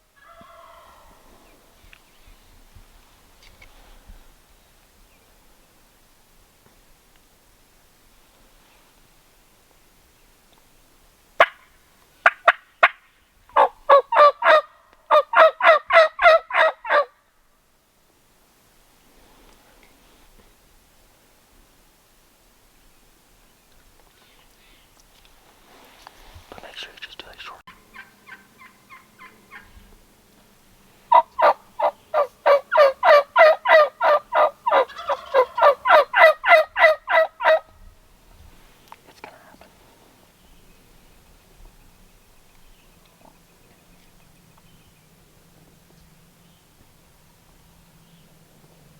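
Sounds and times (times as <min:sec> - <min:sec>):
turkey yelping: 0:00.2 - 0:01.3, 0:13.6 - 0:17.1, 0:27.9 - 0:29.7, 0:31.1 - 0:37.7
turkey clucking: 0:11.4 - 0:11.6, 0:13.6 - 0:17.1, 0:27.7 - 0:29.7, 0:31.1 - 0:37.6.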